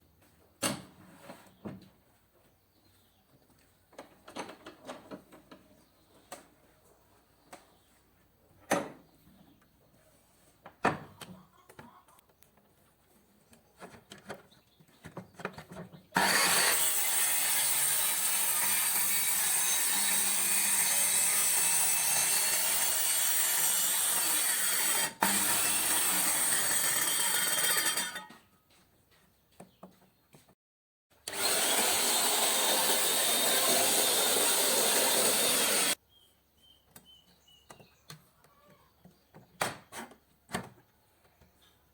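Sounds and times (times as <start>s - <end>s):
circular saw running: 16.2s - 28.3s, 31.2s - 36.0s.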